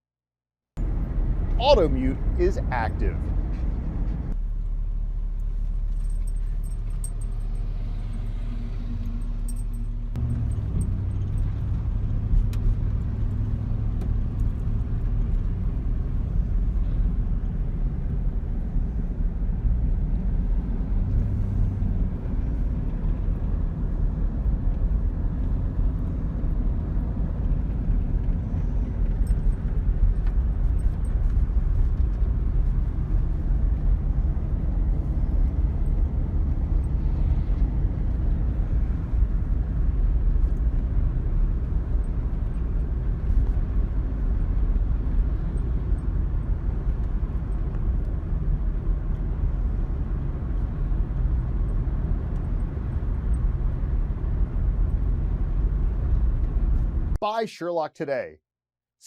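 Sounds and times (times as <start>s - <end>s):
car engine and tyre rumble: 0.8s - 57.2s.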